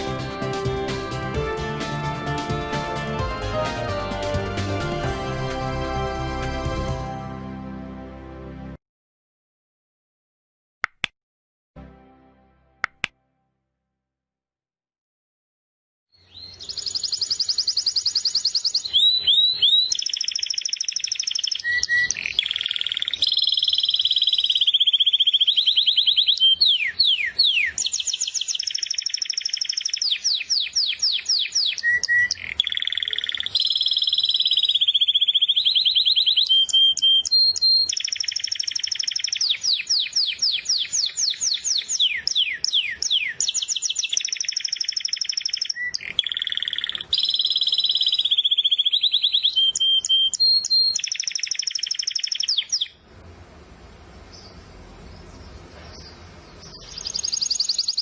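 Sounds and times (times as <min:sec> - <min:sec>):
bird trills and chirps: 0:16.2 - 0:53.0, 0:55.2 - 0:58.0.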